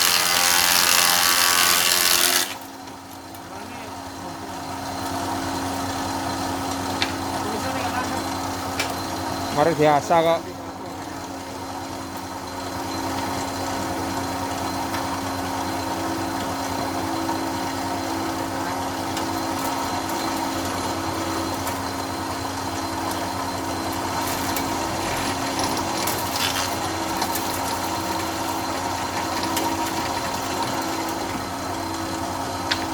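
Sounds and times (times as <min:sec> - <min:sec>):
electric wood planer running: 0:00.0 - 0:02.7, 0:24.0 - 0:31.6.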